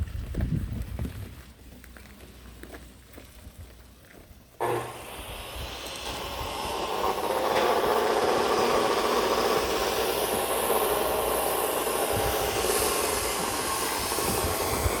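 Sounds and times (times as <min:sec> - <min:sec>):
cable-pulling machine running: 0:04.6 - 0:15.0.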